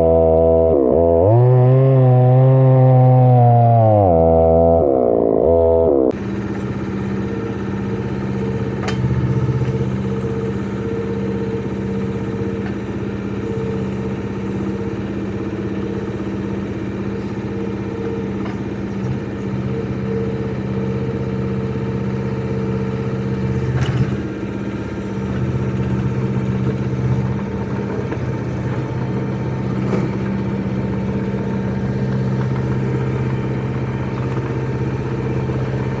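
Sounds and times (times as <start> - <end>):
small diesel engine running: 0.0 - 36.0
short clunks: 8.8 - 10.1, 23.6 - 24.3.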